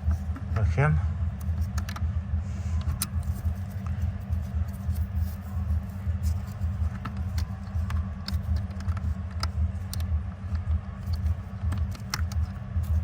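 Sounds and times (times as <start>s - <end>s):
low steady rumble: 0.0s - 13.0s
plastic connector clicks and rattles: 1.4s - 2.0s, 5.9s - 13.0s.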